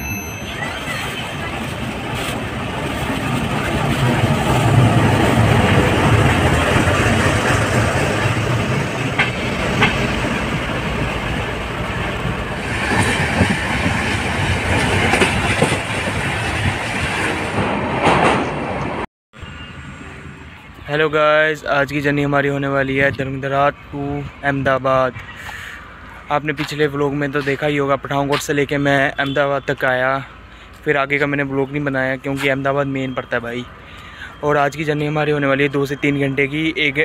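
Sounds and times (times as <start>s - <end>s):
train rumbling on rails: 0.0s - 23.5s.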